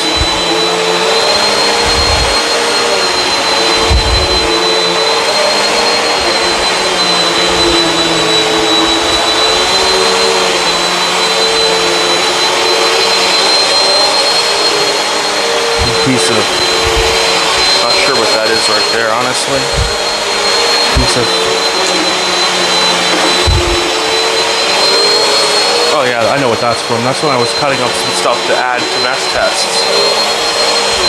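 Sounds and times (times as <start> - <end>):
vacuum cleaner on carpet: 0.0 - 31.0
low thumps: 1.8 - 2.4, 3.2 - 4.9, 15.7 - 17.8, 19.6 - 20.2, 23.3 - 24.0.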